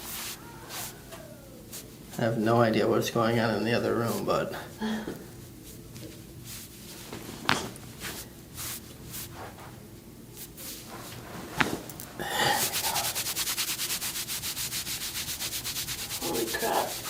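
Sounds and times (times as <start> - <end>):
rapid rhythmic rubbing: 12.6 - 17.0.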